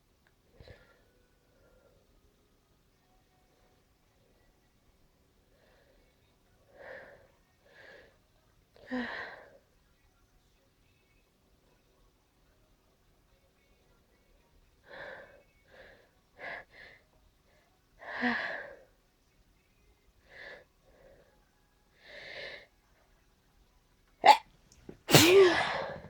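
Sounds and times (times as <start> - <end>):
person sneezing: 25.1 - 26.0.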